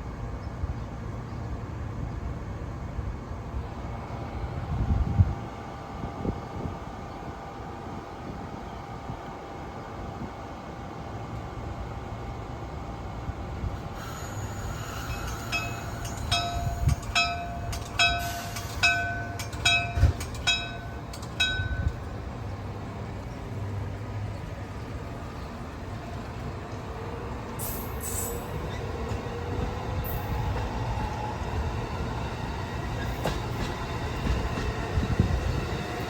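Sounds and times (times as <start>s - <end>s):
train rumbling: 0.0s - 36.0s
short hisses: 14.0s - 16.0s.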